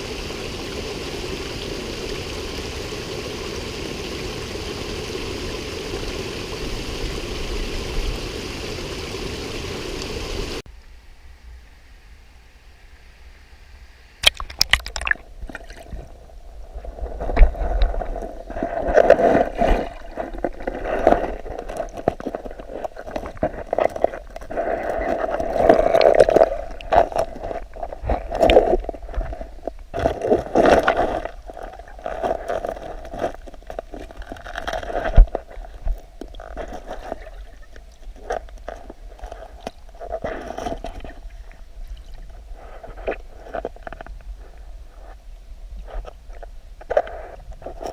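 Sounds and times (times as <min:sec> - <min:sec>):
water splashing and gurgling: 0:00.0 - 0:10.6, 0:14.2 - 0:44.1
knocks and scrapes: 0:15.9 - 0:41.5, 0:45.8 - 0:47.9.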